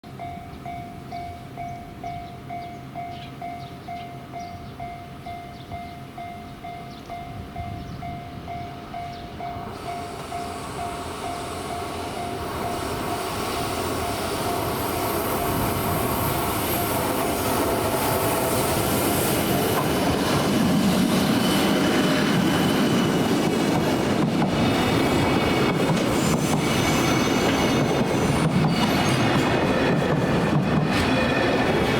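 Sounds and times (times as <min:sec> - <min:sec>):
freight train passing: 0:00.0 - 0:31.9
level-crossing warning bell: 0:00.0 - 0:31.9
high wheel squeal: 0:09.8 - 0:20.3, 0:24.7 - 0:31.9.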